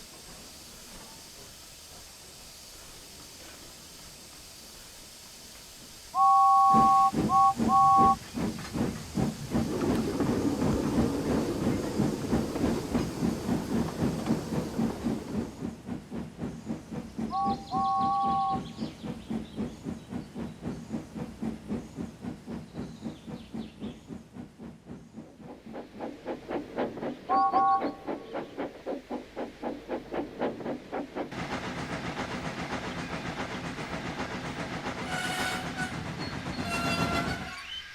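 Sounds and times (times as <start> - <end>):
steam engine chuffing: 0.0 - 37.4
steam locomotive whistle: 6.1 - 8.2, 17.3 - 18.8, 27.3 - 28.1, 35.0 - 37.8.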